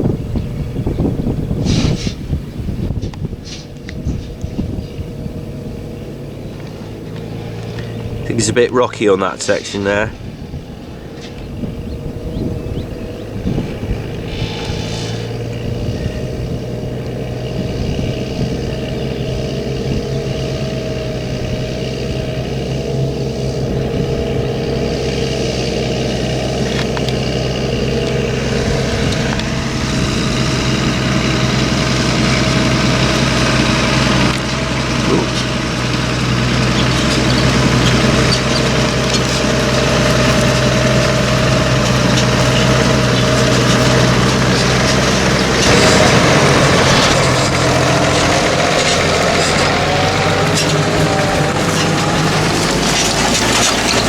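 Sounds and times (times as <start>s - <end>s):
plough rattling and rushing: 0.0s - 54.0s
tractor diesel engine under load: 0.0s - 54.0s.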